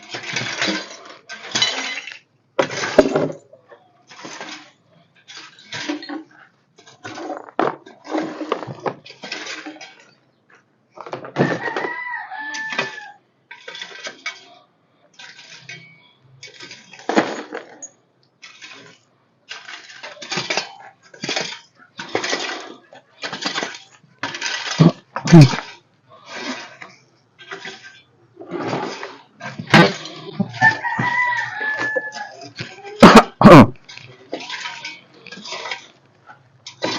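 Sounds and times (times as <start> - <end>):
rough floor scraping: 0.0 - 36.9
rooster crowing: 11.4 - 13.2, 30.6 - 32.4.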